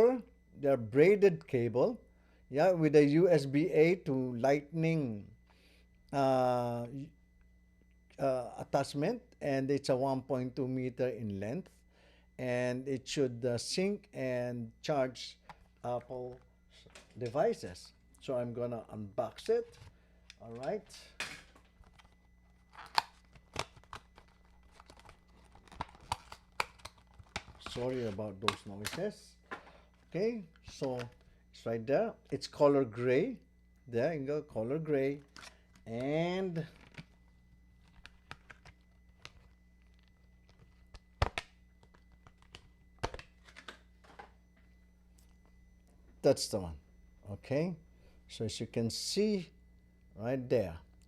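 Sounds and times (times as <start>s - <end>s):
electrical hum: 0.0s - 51.0s
packaging tearing and crinkling: 21.5s - 29.1s, 35.2s - 43.8s
plastic clicks: 37.8s - 44.4s.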